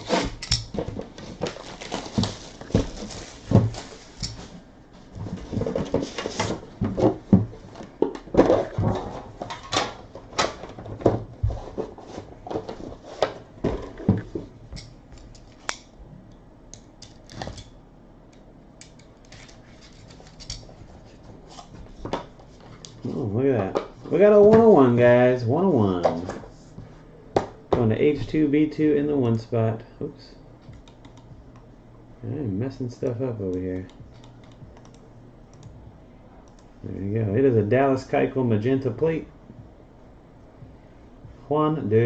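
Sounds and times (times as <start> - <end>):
packaging tearing and rustling: 1.3 - 4.2.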